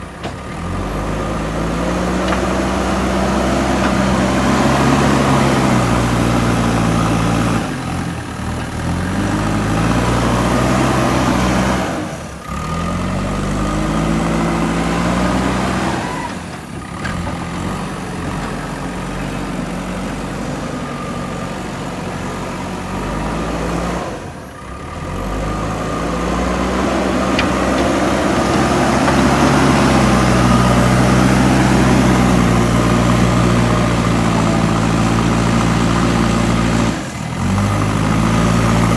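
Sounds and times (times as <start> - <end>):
diesel engine revving: 0.0 - 38.9.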